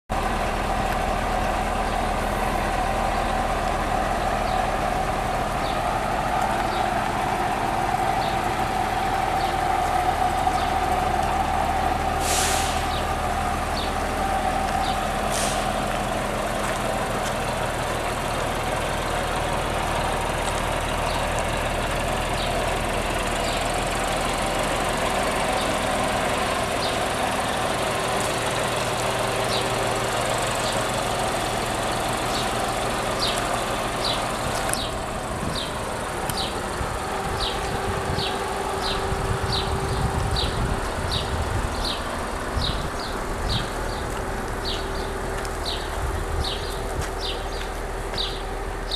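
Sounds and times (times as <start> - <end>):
diesel bus engine idling: 0.0 - 48.9
compressed air hissing: 12.1 - 13.1, 15.2 - 15.8.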